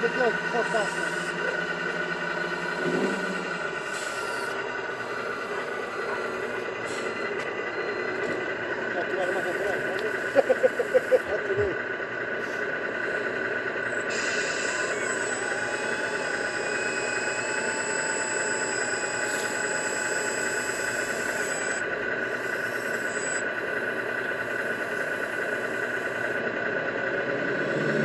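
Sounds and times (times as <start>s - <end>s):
thin high whines: 0.0s - 11.4s, 12.4s - 26.4s
toy truck motor humming: 0.0s - 28.0s.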